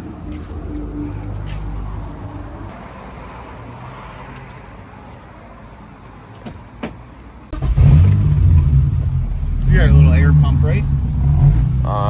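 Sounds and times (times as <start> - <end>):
loud low car engine rumble: 0.0 - 3.5, 7.5 - 12.0.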